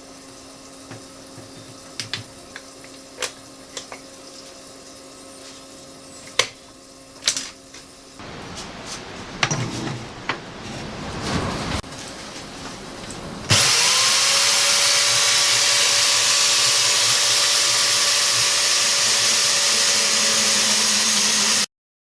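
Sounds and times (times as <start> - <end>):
electric metal-cutting saw: 13.5 - 21.7.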